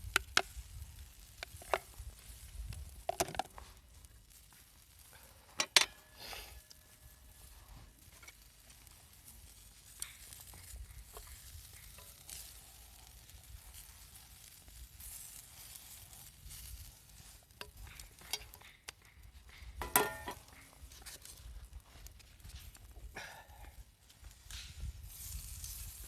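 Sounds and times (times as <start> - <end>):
food sizzling on a griddle: 0.0 - 23.4, 24.2 - 26.0
utensil clicking and scraping: 9.5 - 21.5
ringing metallic clatter: 19.8 - 20.6.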